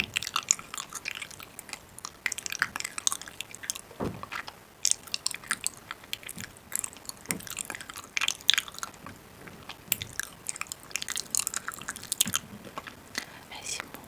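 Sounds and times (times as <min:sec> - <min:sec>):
person chewing crunchy food: 0:09.6 - 0:13.4.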